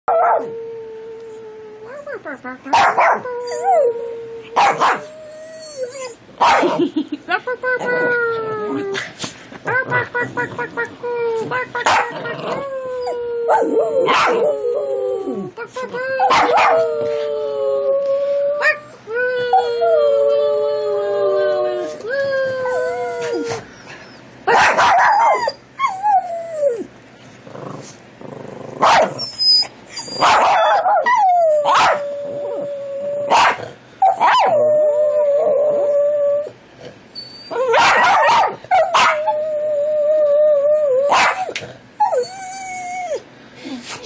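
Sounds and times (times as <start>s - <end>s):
dog barking and yipping: 2.8s - 3.2s, 4.6s - 5.1s, 6.4s - 6.8s, 11.8s - 12.1s, 14.0s - 14.4s, 16.3s - 16.8s, 24.5s - 25.5s, 28.8s - 29.2s, 30.2s - 32.0s, 33.3s - 33.6s, 37.7s - 39.2s, 41.1s - 41.5s
dog howling: 12.4s - 15.5s, 30.2s - 36.6s.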